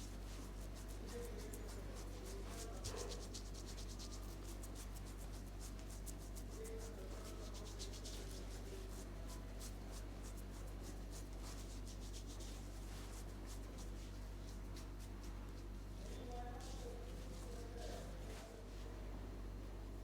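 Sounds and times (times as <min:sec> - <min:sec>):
scratchy rubbing on hair: 0:00.0 - 0:15.7
steady low hum: 0:00.0 - 0:20.0.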